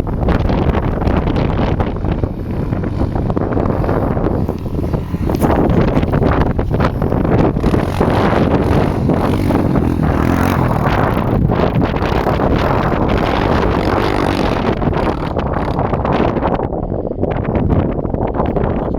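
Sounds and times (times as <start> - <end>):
atv engine revving: 0.0 - 16.6
wind buffeting microphone: 0.0 - 18.9.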